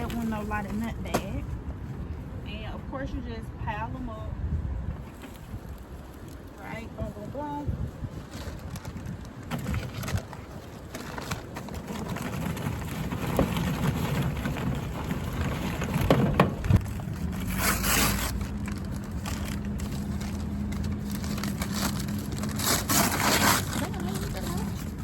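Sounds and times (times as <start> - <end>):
wind rumble on microphone: 0.0 - 25.0
charcoal crunching: 8.1 - 25.0.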